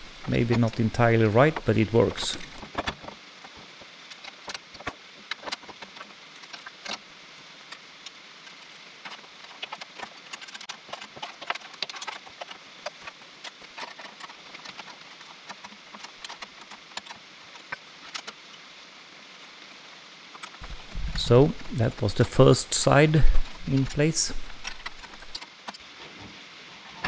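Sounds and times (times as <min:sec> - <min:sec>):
steady hiss: 0:00.0 - 0:27.0.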